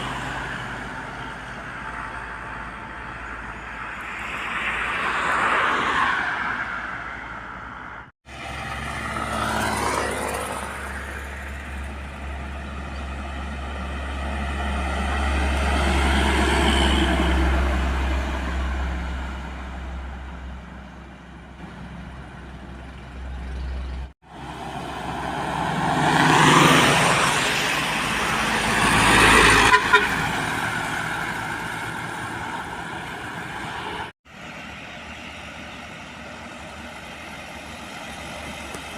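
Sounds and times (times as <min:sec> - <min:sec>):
heavy trucks passing: 0:00.0 - 0:38.9
truck horns: 0:28.7 - 0:31.4.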